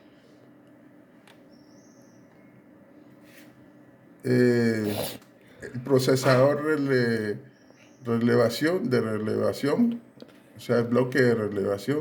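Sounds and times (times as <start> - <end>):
faint steady hum: 0.0 - 12.0
microphone hiss: 4.2 - 12.0.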